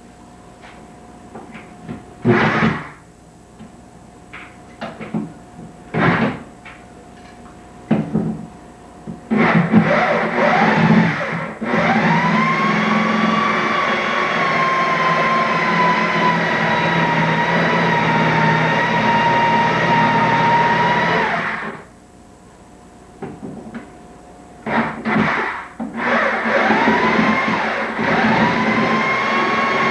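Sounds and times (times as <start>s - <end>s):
motor whining: 9.4s - 21.9s, 24.7s - 29.9s.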